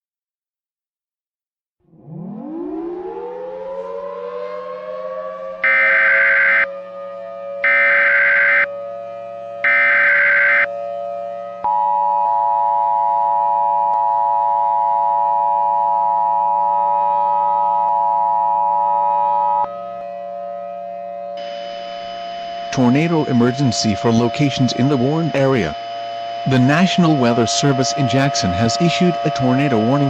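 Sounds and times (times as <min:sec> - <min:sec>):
steady low drone: 0:19.6 - 0:30.0.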